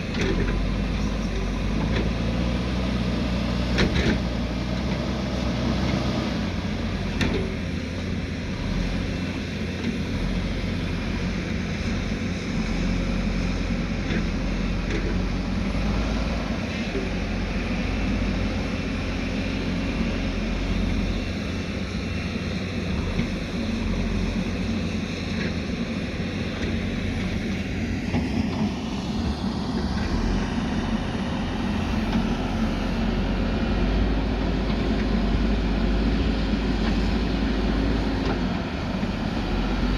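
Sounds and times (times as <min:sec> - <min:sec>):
heavy diesel engine running: 0:00.0 - 0:39.9
rising whine: 0:28.2 - 0:36.4.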